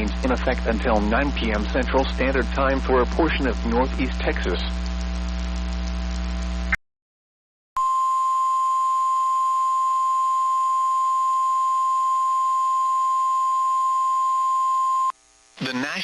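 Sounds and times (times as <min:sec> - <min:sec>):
steady warning alarm tone: 0:07.8 - 0:15.1.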